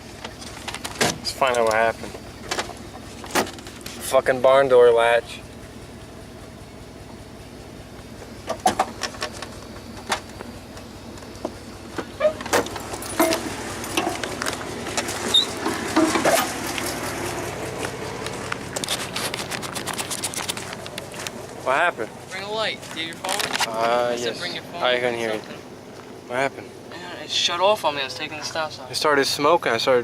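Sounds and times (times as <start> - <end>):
clicks and knocks of handling: 17.8 - 21.4.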